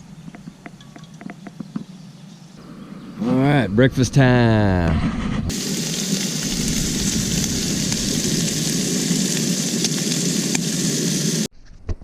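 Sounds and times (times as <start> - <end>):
food sizzling in a pan: 5.5 - 11.5.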